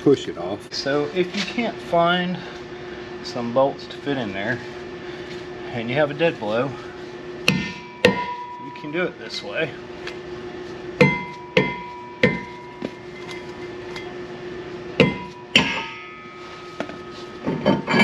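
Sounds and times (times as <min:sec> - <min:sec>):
hammer striking metal: 0:07.5 - 0:09.0, 0:11.0 - 0:13.4, 0:15.0 - 0:16.4
metal ringing: 0:07.5 - 0:09.2, 0:11.0 - 0:14.2, 0:15.0 - 0:18.0.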